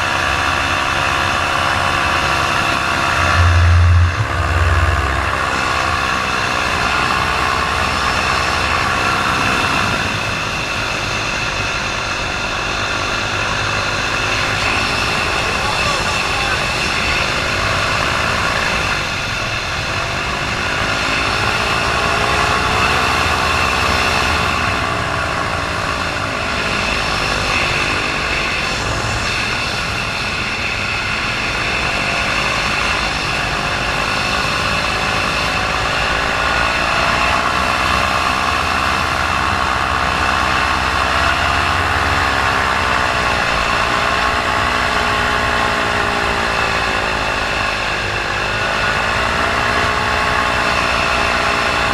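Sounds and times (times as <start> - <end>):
paramotor engine running: 0.0 - 51.9.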